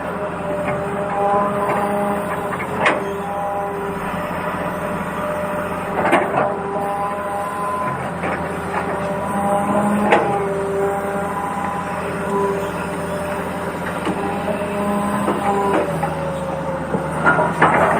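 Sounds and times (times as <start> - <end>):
small electric motors whining: 0.0 - 17.9.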